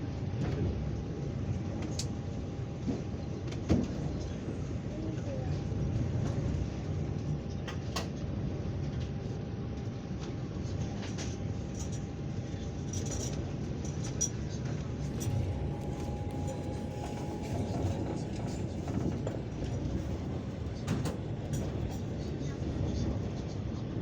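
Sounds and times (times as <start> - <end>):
train carriage rumbling on track: 0.0 - 24.0
faint steady whine: 14.2 - 23.8.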